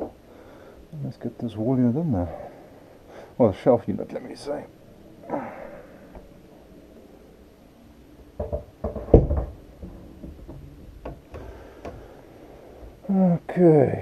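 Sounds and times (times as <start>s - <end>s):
shelf unit knocks and thuds: 8.4s - 12.1s.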